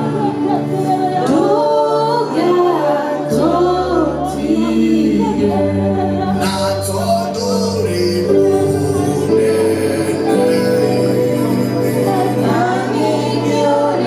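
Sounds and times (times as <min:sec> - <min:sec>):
gospel choir singing: 0:00.0 - 0:14.0
sustained keyboard chords: 0:00.0 - 0:14.0.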